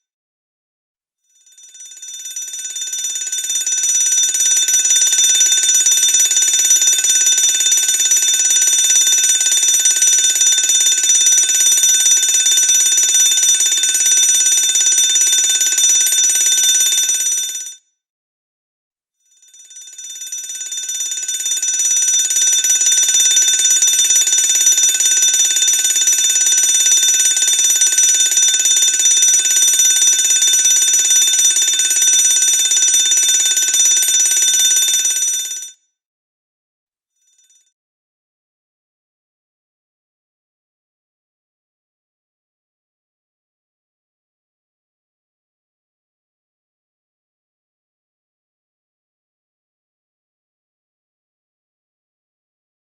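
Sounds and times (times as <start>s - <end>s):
fire alarm bell ringing: 4.3s - 17.7s, 19.5s - 35.7s.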